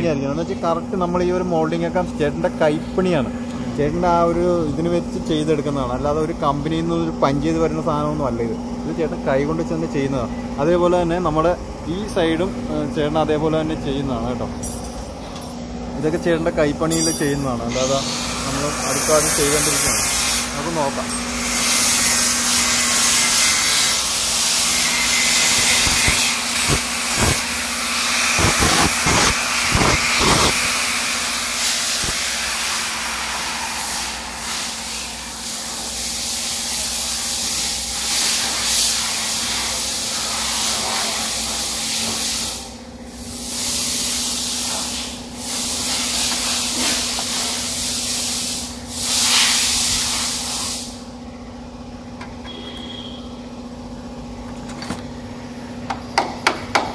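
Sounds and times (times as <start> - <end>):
steady hum: 0.0 - 36.2
power tool grinding metal: 16.3 - 35.9.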